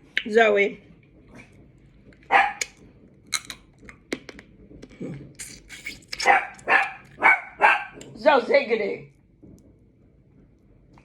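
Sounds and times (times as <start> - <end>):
mouth clicks and lip smacks: 3.9 - 7.2.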